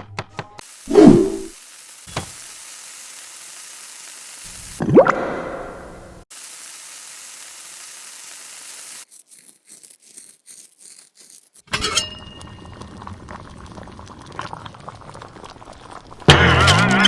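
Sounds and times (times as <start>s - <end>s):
steady cooking hiss: 0.6s - 4.8s, 6.2s - 9.1s
cookware clattering and clinking: 11.7s - 13.2s.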